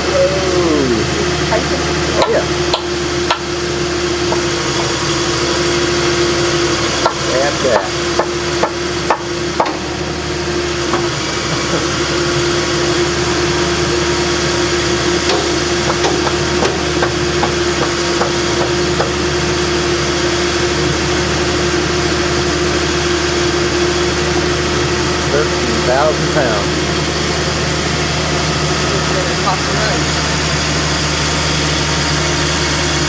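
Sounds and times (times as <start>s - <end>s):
diesel engine running: 0.0s - 33.0s
steady whine: 0.0s - 33.0s
sharp knocks: 15.2s - 19.2s.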